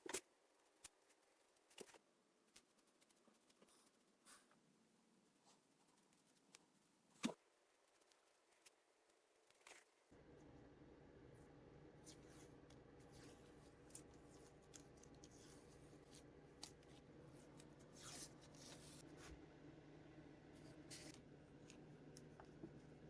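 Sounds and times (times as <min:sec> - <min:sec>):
steady low hum: 0:10.1 - 0:23.0.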